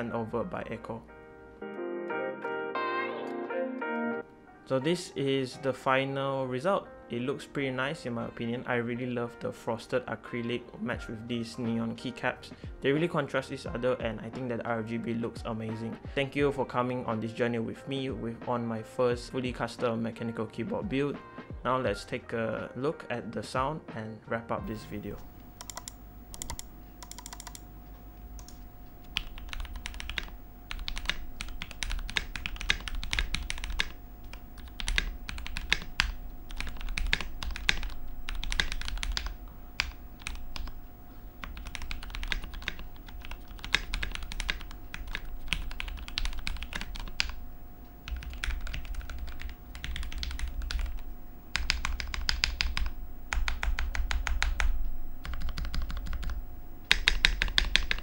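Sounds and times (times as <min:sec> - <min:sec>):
mechanical keyboard typing: 0:24.7 - 0:40.8, 0:41.4 - 0:47.4, 0:48.0 - 0:58.0.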